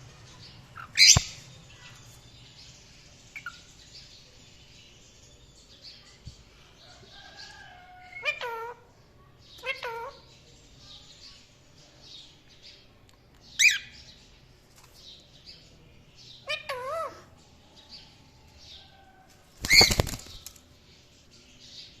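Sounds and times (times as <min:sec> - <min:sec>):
parrots soft twittering: 0:00.8 - 0:01.4.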